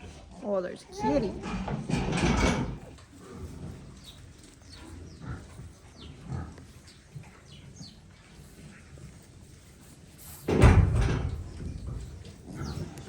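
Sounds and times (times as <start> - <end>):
soft pig grunts: 2.3 - 10.5, 11.9 - 13.0.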